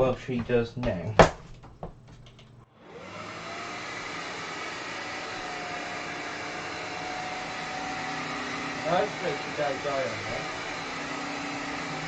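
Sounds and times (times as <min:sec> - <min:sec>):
floor cleaner motor whine: 0:02.7 - 0:12.0.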